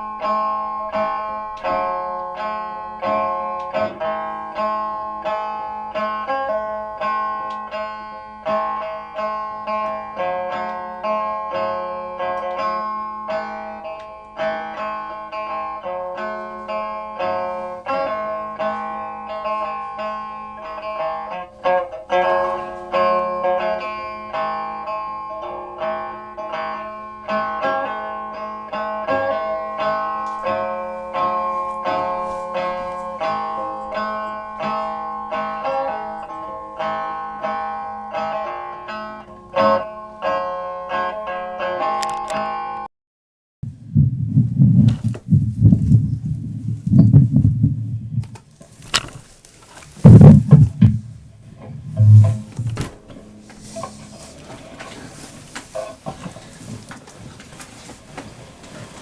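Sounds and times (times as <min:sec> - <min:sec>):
plucked string instrument: 0:00.0 - 0:42.8, 0:50.0 - 0:55.0
steady low drone: 0:50.1 - 0:53.0.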